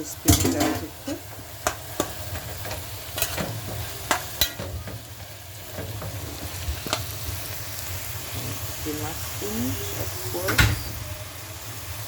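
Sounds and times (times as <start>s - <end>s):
vegetables sizzling in hot oil: 0.0s - 12.0s.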